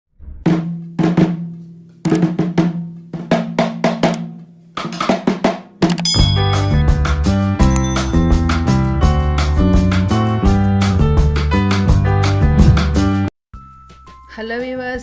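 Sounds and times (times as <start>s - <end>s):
rhythmic drum strikes: 0.4s - 8.9s.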